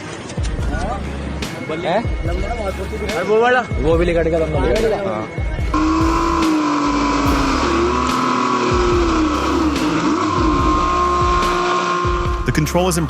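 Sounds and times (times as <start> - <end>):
music with deep bass beat: 3.8 - 13.0
vehicle engine running: 5.7 - 13.0.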